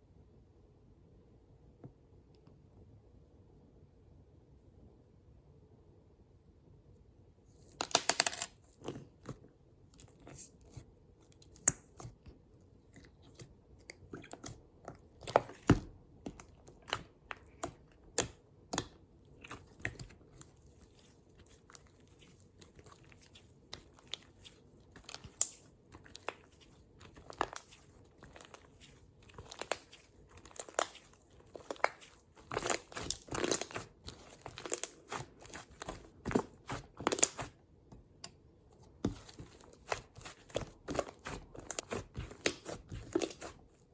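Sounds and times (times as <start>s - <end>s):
slime crackling and tearing: 19.4s - 37.6s, 39.2s - 43.6s.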